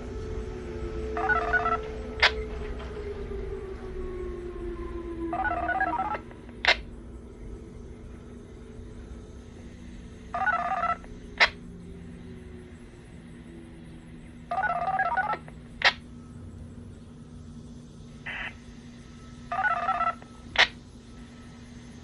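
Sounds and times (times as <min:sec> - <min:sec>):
steady low hum: 0:00.0 - 0:22.0
tornado siren winding down: 0:00.0 - 0:22.0
touch-tone beeps: 0:01.2 - 0:01.8.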